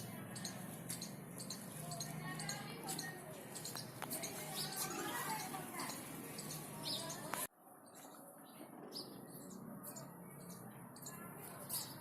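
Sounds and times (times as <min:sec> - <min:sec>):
parrot chirping and squeaking: 0:00.4 - 0:07.4.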